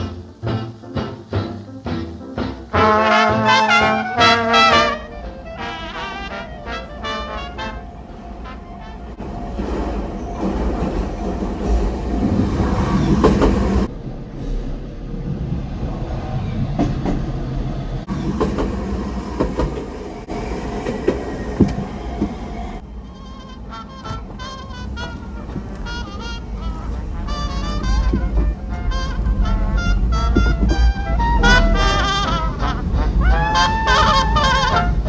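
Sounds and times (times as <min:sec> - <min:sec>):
train wheels clacking on rails: 0:04.7 - 0:13.9, 0:18.1 - 0:35.0.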